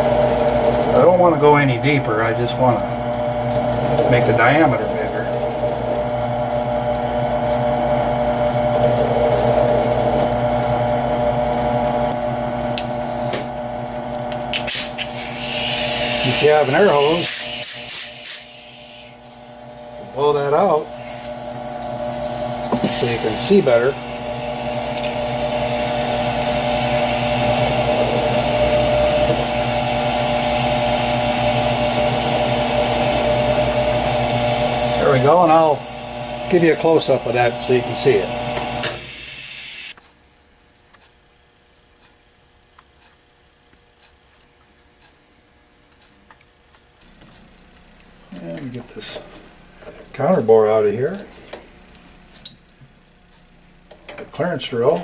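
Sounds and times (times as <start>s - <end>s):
drill cutting into metal: 14.6s - 40.0s.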